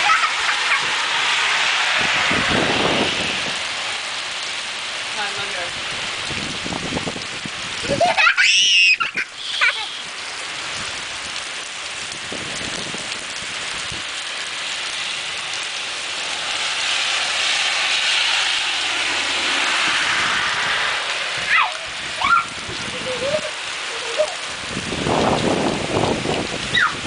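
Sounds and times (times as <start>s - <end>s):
brief high-pitched voice: 0.0s - 0.8s, 21.5s - 24.4s
heavy rain pouring: 0.0s - 27.0s.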